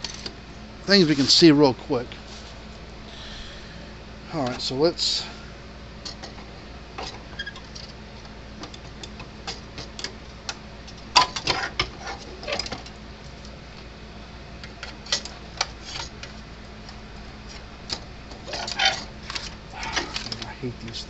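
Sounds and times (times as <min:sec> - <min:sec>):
steady low hum: 0:00.0 - 0:21.0
light clicks and knocks of parts: 0:14.6 - 0:21.0.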